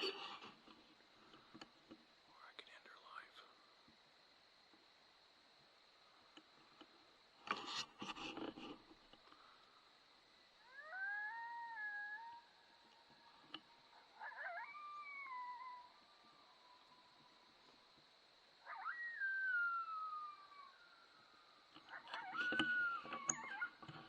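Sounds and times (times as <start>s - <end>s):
coyotes howling: 10.6s - 24.0s.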